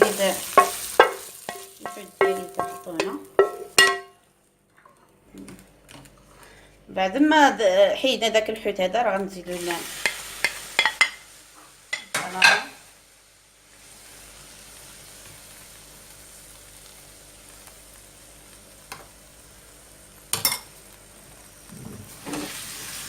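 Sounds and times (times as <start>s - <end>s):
food sizzling in a pan: 0.0s - 4.2s, 9.4s - 23.0s
utensil knocking and scraping pan: 0.0s - 4.2s.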